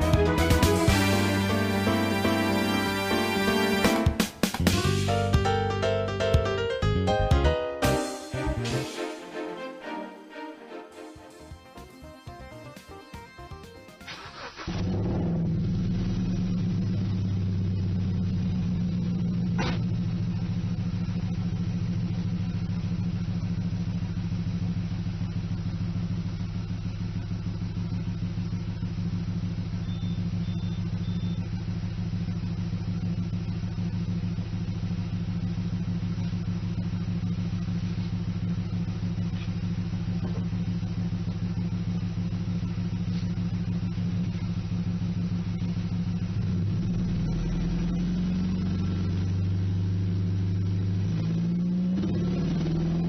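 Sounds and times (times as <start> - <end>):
car engine idling: 13.6 - 53.0.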